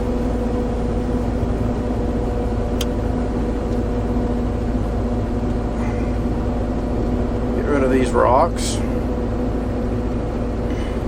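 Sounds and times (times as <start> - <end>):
excavator engine running: 0.0 - 11.0.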